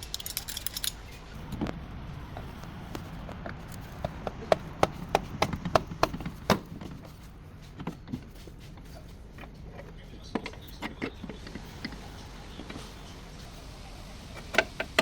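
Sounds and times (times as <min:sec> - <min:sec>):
sharp knocks from hand tools: 0:04.0 - 0:07.0.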